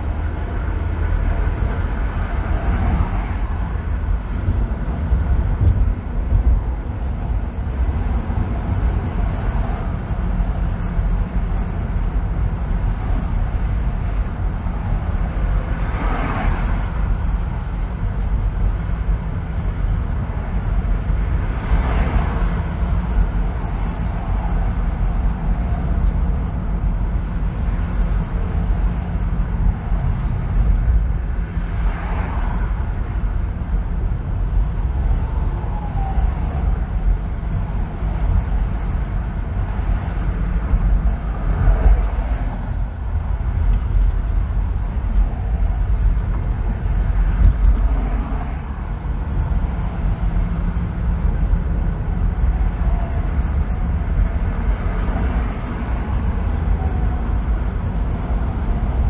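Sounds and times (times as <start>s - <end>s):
deep road rumble: 0.0s - 59.0s.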